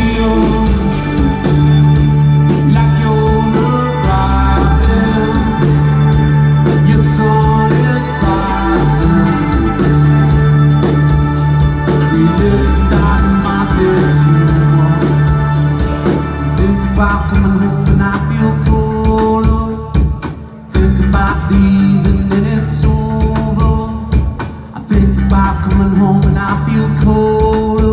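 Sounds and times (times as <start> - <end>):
organ-like keyboard chords: 0.0 - 19.1
rock band playing: 0.0 - 27.9.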